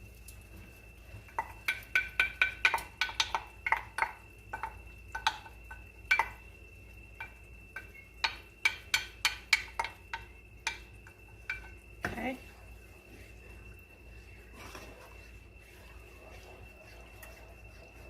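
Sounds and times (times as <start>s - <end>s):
utensil clinking against pan: 1.3s - 6.4s, 7.2s - 12.3s.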